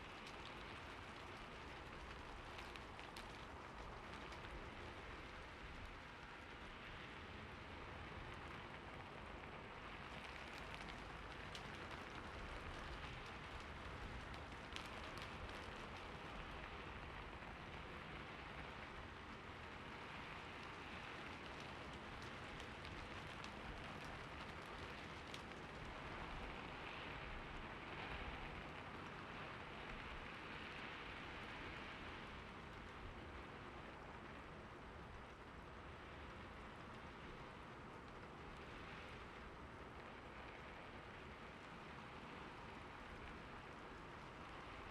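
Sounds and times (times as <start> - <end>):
rain on a rooftop: 0.0 - 44.9
sharp raindrop ticks: 0.0 - 44.9.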